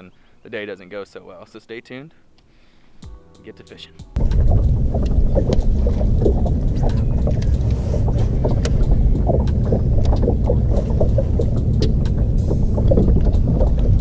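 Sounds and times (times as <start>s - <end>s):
water slapping against hull: 4.2s - 14.0s
wind buffeting microphone: 4.2s - 14.0s.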